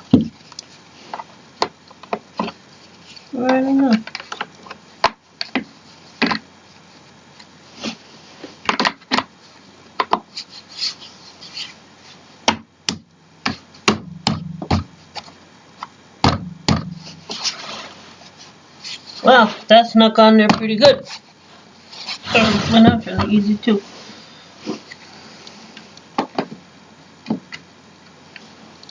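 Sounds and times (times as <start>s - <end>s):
plastic parts clicking and knocking: 3.9s - 6.4s, 8.6s - 9.3s, 10.0s - 10.3s
piece rubbing sliding into place: 21.9s - 24.9s.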